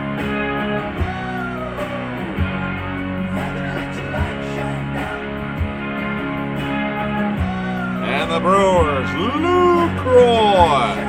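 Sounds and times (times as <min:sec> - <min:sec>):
rock music: 0:00.0 - 0:11.0
person singing: 0:07.4 - 0:11.0.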